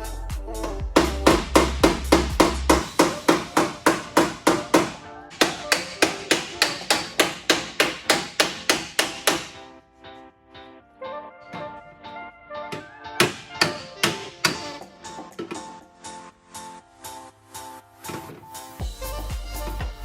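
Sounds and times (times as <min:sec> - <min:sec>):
hammer striking steel panel: 0:01.0 - 0:09.6, 0:13.2 - 0:14.9.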